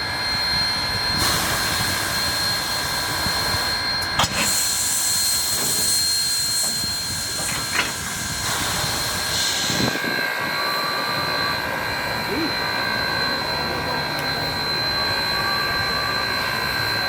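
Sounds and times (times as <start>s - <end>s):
steam locomotive hissing: 0.5s - 10.8s.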